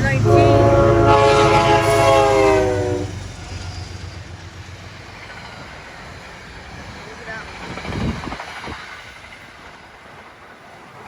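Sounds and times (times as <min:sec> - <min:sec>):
locomotive air horn blast: 0:00.0 - 0:03.2
passing train rumble: 0:00.0 - 0:11.0.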